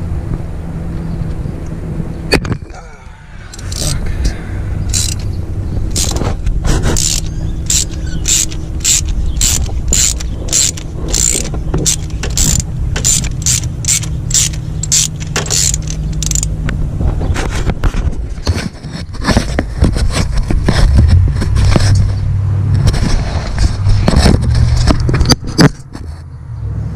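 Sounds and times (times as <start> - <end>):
ratchet wrench clicking: 3.5 - 4.0, 4.9 - 5.3, 5.9 - 6.2, 7.0 - 16.5.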